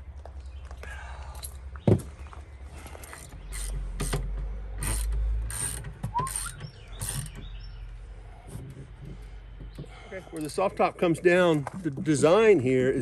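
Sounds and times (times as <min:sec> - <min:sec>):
ratchet wrench ratcheting: 0:03.1 - 0:04.2, 0:04.8 - 0:07.4.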